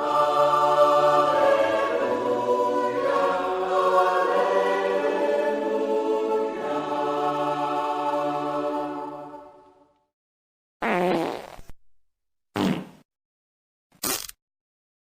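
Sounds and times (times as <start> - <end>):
choir singing held chords: 0.0 - 9.9.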